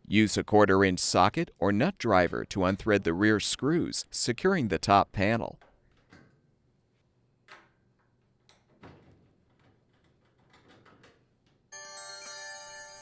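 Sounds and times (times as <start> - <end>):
chime ringing steady tones: 11.7 - 13.0.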